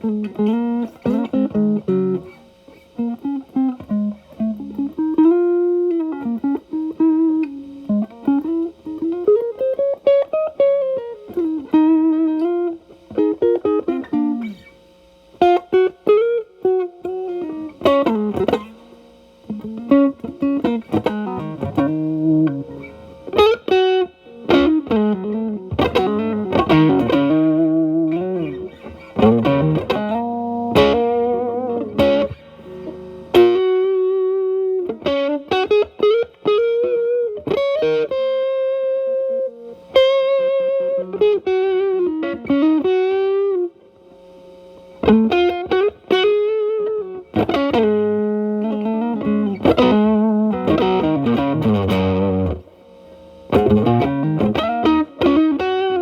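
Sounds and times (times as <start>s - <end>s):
distorted electric guitar lead: 0.0s - 56.0s.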